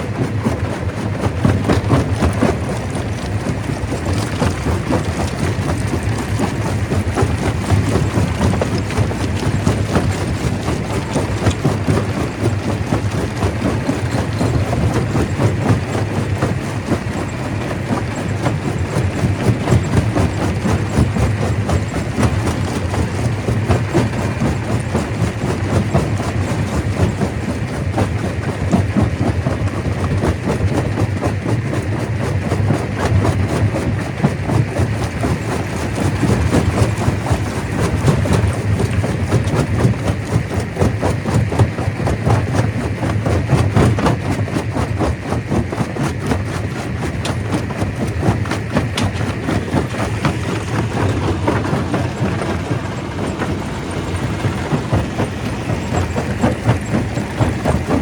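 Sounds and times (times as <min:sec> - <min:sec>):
stone crusher rumbling: 0:01.0 - 0:27.6, 0:46.2 - 0:58.0.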